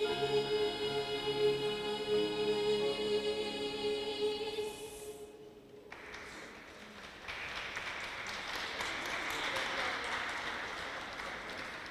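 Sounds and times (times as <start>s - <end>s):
choir singing: 0.0s - 5.7s
audience applauding: 5.9s - 11.9s.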